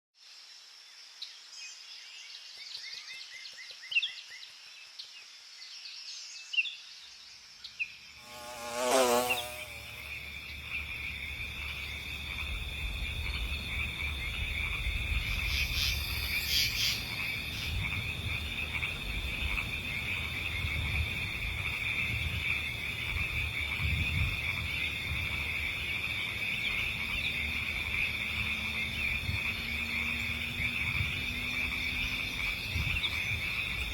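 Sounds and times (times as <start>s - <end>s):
high insect buzz: 7.8s - 33.9s.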